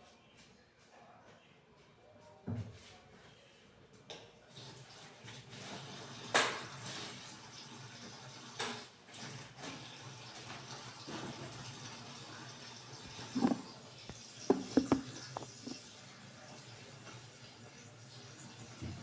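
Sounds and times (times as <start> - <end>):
tap water running into sink: 5.8 - 17.5
dishware clattering: 13.1 - 15.8.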